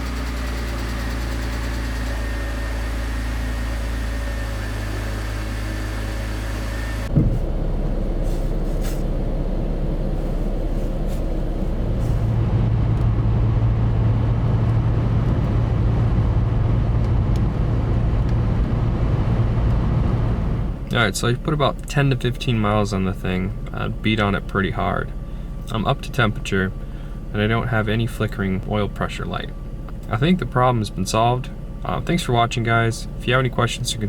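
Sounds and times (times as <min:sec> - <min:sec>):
car engine idling: 0:00.0 - 0:34.0
car running with low drone: 0:00.0 - 0:34.0
thump: 0:07.1 - 0:07.5.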